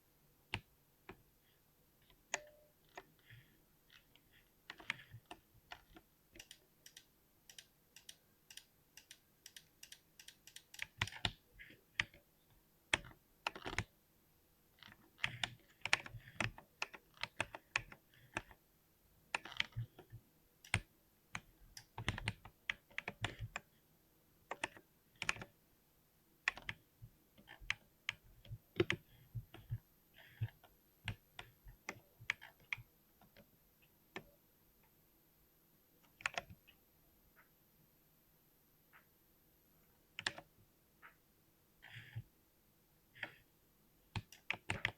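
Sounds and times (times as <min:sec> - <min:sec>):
mechanical keyboard typing: 0:04.7 - 0:11.4, 0:14.8 - 0:18.6, 0:19.3 - 0:20.0, 0:26.5 - 0:26.8, 0:44.2 - 0:44.9.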